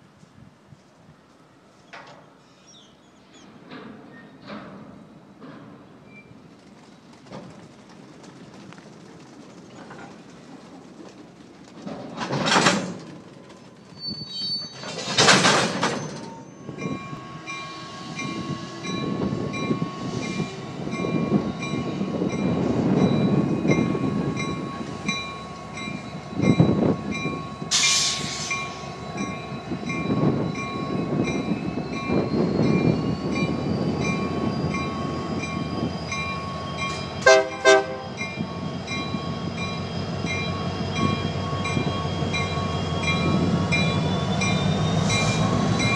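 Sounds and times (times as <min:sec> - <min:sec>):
diesel locomotive running: 0:03.6 - 0:45.9
locomotive bell ringing: 0:16.3 - 0:27.8, 0:28.6 - 0:45.9
air hissing: 0:27.7 - 0:28.9
train horn blasts: 0:37.2 - 0:38.2.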